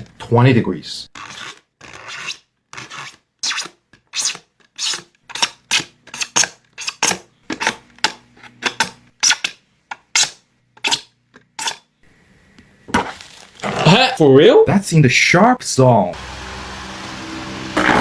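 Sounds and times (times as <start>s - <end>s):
rasping scrapes on plastic blade: 1.1s - 7.8s.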